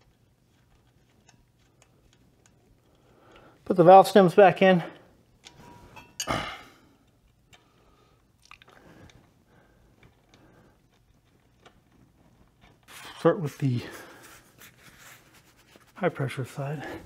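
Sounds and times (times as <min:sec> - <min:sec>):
faint handling clicks and rattles: 0:00.0 - 0:04.4, 0:07.0 - 0:13.8.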